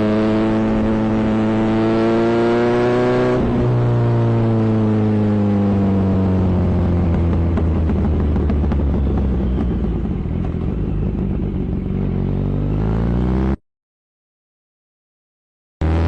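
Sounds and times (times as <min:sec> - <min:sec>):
motorcycle engine revving: 0:00.0 - 0:13.6.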